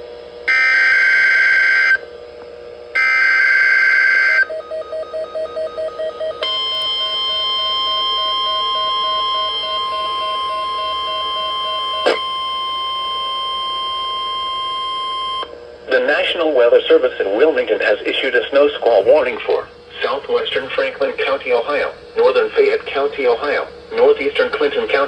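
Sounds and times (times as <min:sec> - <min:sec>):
rapid pulsing beep: 0:03.0 - 0:15.5
steady high attention tone: 0:03.0 - 0:22.6.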